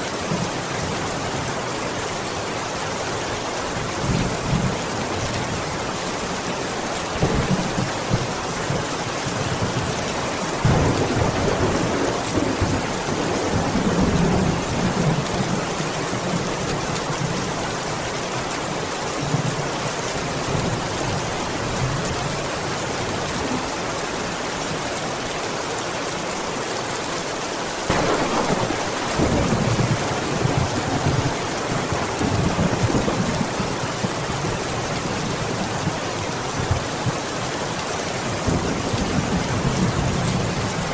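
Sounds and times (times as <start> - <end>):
heavy rain falling: 0.0 - 40.9
thunder rumbling: 10.6 - 15.6, 27.9 - 36.0.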